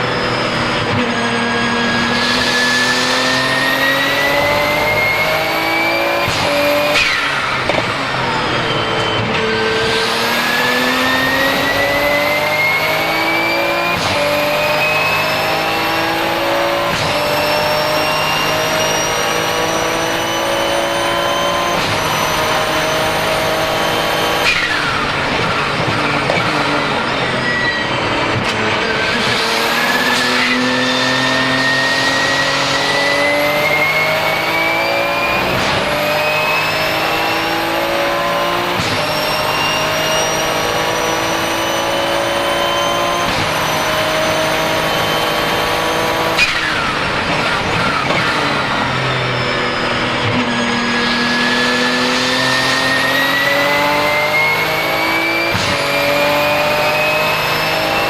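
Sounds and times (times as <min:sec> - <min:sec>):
race car engine accelerating: 0:00.0 - 0:58.0
turbo whistle: 0:26.1 - 0:28.3.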